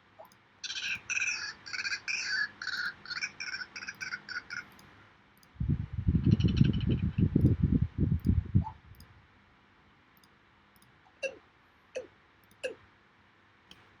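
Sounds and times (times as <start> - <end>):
click: 0.2 - 0.4, 3.9 - 5.6, 8.2 - 9.1, 10.2 - 11.0, 12.4 - 12.8, 13.7 - 13.9
low hooting bird calls: 0.2 - 4.8, 6.2 - 7.3.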